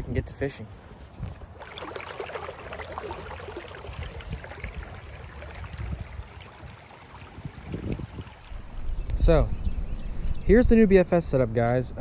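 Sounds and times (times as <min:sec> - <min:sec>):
creek water babbling: 0:01.3 - 0:09.3.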